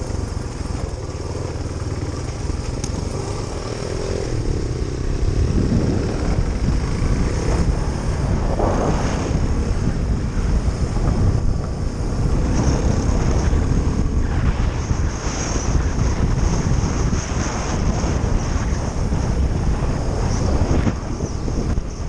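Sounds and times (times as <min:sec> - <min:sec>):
motorcycle engine running: 0:00.0 - 0:22.0
wind buffeting microphone: 0:00.0 - 0:22.0.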